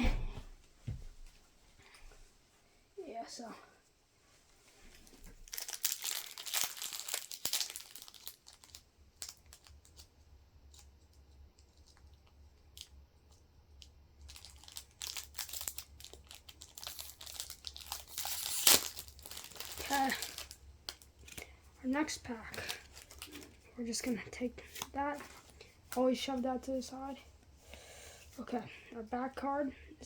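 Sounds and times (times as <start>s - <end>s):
foil wrapper crinkling and tearing: 5.0s - 13.0s, 13.8s - 23.7s.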